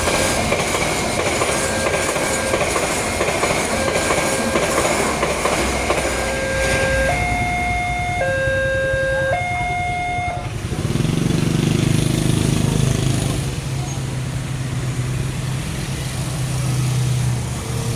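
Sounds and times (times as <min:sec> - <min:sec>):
level-crossing two-tone siren: 0:03.6 - 0:10.6.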